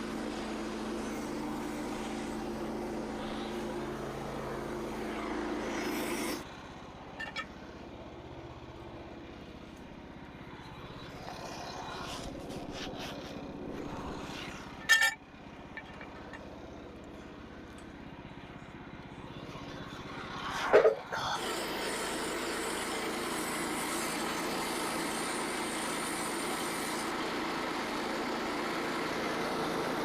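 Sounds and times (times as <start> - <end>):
sawmill engine running: 0.0 - 30.0
sharp metal clank: 14.8 - 15.2.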